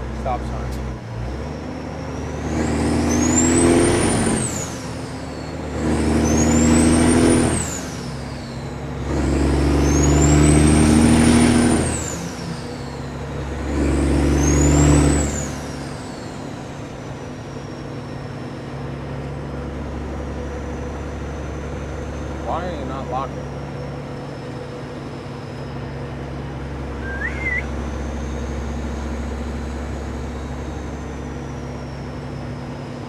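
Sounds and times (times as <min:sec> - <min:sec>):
diesel truck engine pulling away: 0:00.0 - 0:33.0
turbo whistle: 0:27.0 - 0:27.8.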